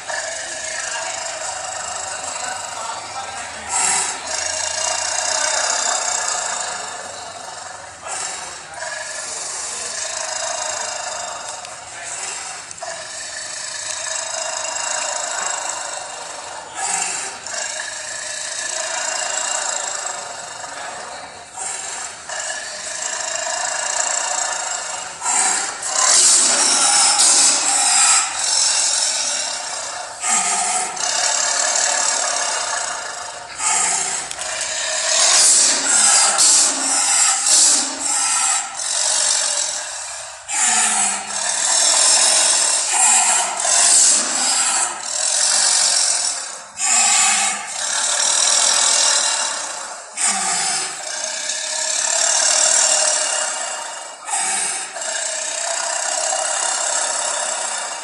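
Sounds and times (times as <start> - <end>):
raspy animal snarl: 0.0 - 58.0.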